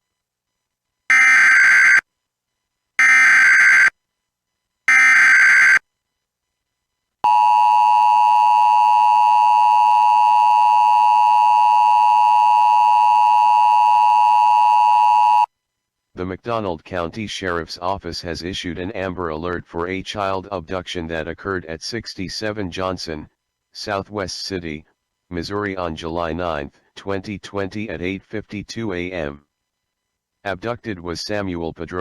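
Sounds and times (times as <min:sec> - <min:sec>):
two-tone attention signal: 0:07.3 - 0:15.5.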